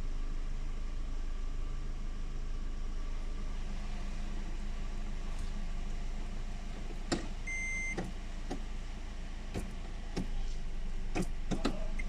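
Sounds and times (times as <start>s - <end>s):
steady low hum: 0.0s - 12.0s
short electronic beep: 7.5s - 8.0s.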